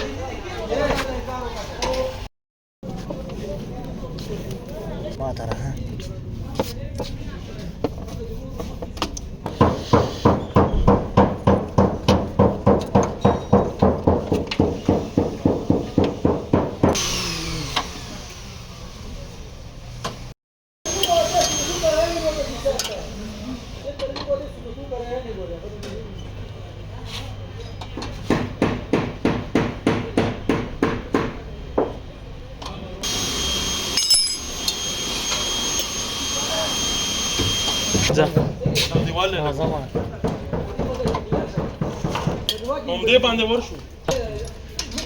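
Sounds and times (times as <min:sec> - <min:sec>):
machine noise with high whine: 0:33.0 - 0:38.1.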